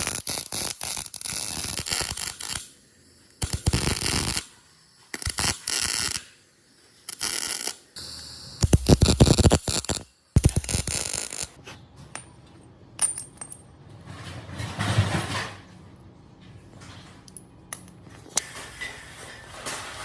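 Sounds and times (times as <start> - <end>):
metallic clinks and taps: 12.1 - 13.6.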